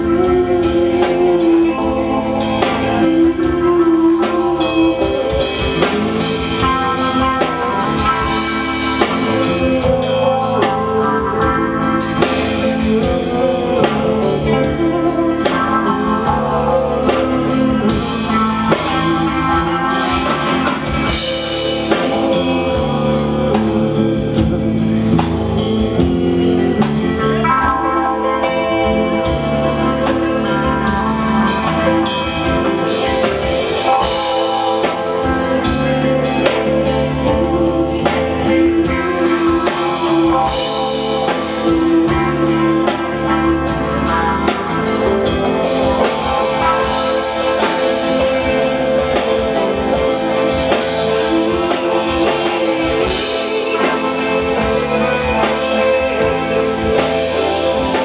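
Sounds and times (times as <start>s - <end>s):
rock band playing: 0.0s - 58.0s.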